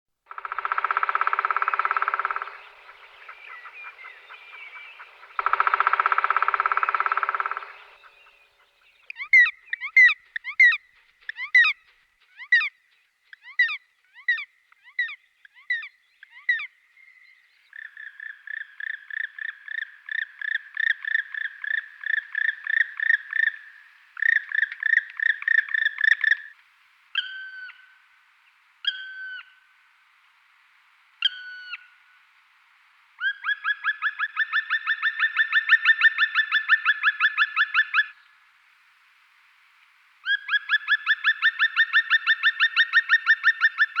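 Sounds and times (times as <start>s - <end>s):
woodpecker calling: 0.3s - 12.7s, 17.7s - 26.6s, 33.2s - 38.2s, 40.2s - 44.0s
woodpecker drumming: 0.3s - 12.7s.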